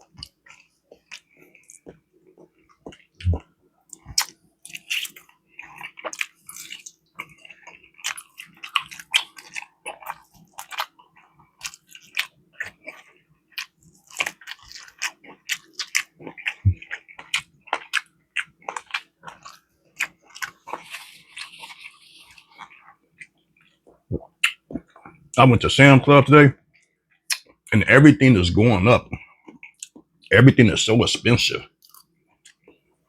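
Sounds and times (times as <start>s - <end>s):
person chewing and biting: 0.0s - 25.2s.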